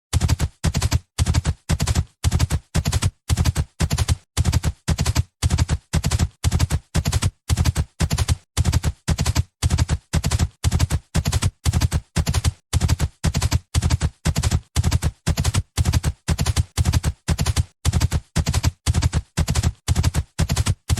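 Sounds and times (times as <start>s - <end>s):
horse hooves galloping: 0.2s - 20.9s.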